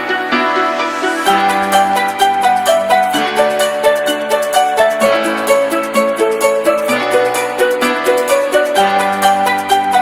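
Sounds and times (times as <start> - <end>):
instrumental music with plucked notes: 0.0 - 10.0.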